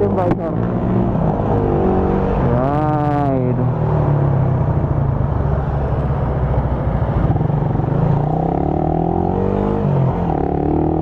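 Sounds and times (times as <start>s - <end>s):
wind and road noise: 0.0s - 11.0s
motorcycle engine running: 1.4s - 9.2s.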